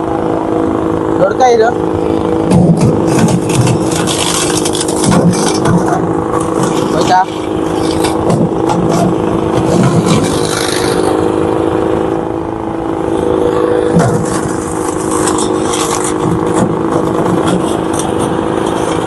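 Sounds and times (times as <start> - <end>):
wood chipper engine running: 0.0 - 19.0
scraping and crackling shredding: 2.4 - 11.4, 13.8 - 19.0.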